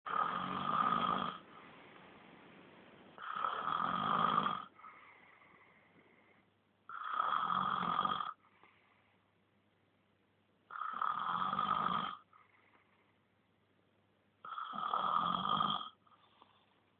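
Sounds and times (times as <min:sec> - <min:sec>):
pet snoring: 0:00.1 - 0:01.7, 0:03.2 - 0:06.2, 0:06.9 - 0:08.9, 0:10.7 - 0:13.0, 0:14.4 - 0:16.8
faint breathing: 0:01.3 - 0:02.6, 0:04.6 - 0:06.7, 0:08.3 - 0:09.6, 0:12.2 - 0:13.5, 0:16.0 - 0:16.9.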